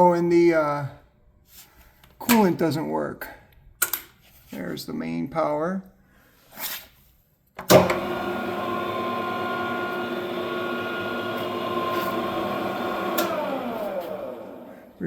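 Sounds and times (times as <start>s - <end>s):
lathe starting clunk: 7.7s - 15.0s
lathe winding down: 7.7s - 15.0s
lathe running with gear whine: 7.9s - 15.0s.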